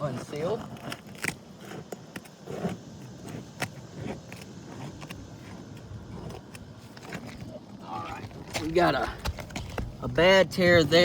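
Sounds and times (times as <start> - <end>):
roof shingles being pried loose: 0.6 - 7.5.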